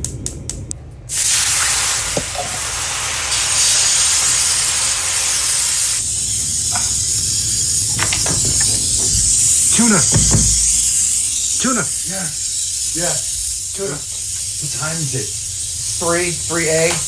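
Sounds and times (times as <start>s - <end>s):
loud steady hiss: 0.0s - 17.0s
gas stove igniter clicking: 5.9s - 11.6s, 16.7s - 17.0s.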